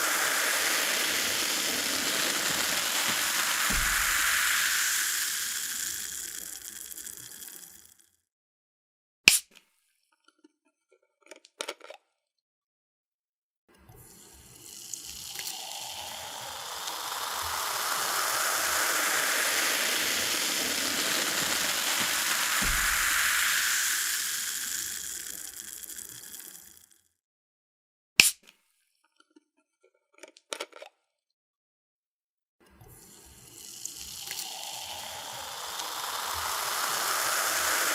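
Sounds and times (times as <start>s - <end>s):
fizzy drink pouring: 0.0s - 8.0s, 13.9s - 27.0s, 32.9s - 37.9s.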